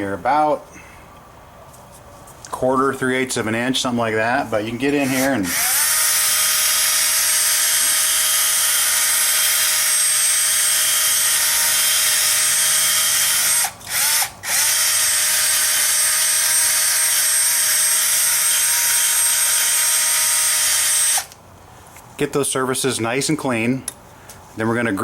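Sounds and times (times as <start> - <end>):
power drill with wire brush scrubbing: 4.9 - 21.4.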